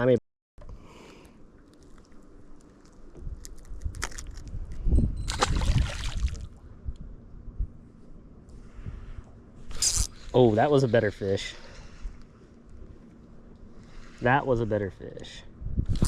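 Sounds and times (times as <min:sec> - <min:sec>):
water splashing and sloshing: 0:05.2 - 0:06.6.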